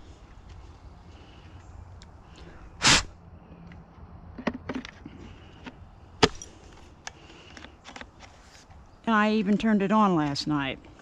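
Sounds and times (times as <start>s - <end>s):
short loud hiss: 2.8s - 3.1s.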